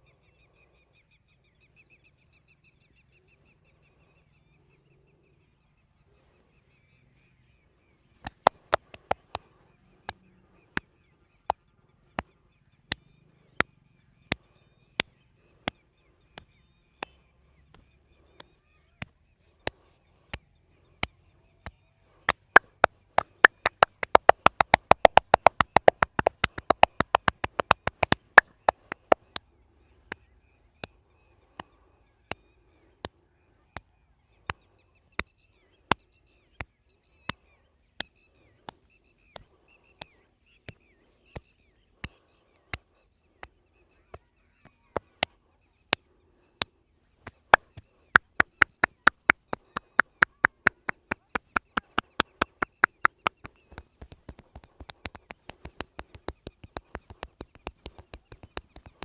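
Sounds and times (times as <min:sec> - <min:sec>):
hand slaps on body: 0:22.3 - 0:29.2.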